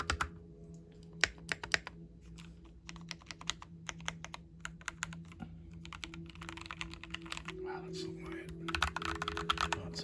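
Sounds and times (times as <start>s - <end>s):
mechanical keyboard typing: 0.0s - 0.4s, 1.2s - 7.6s, 8.6s - 9.9s.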